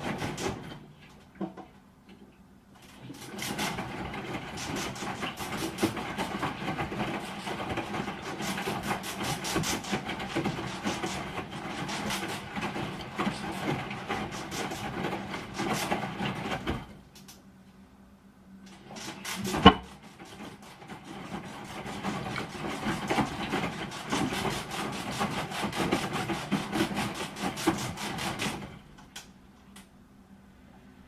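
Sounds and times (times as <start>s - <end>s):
washing machine scraping clatter: 0.0s - 1.8s, 2.8s - 17.3s, 18.6s - 29.8s
loud knock: 19.5s - 19.9s.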